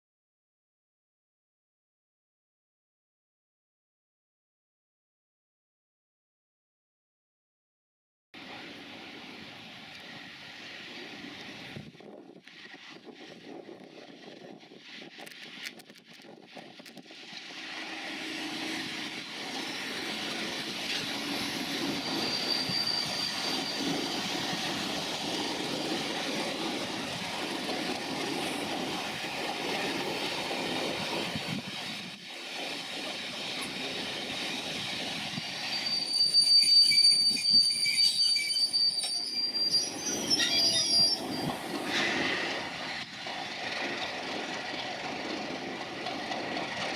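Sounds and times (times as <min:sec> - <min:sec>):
train rail and wheel noise: 0:08.4 - 0:46.9
high-pitched wheel squeal: 0:19.5 - 0:25.0, 0:35.4 - 0:42.2.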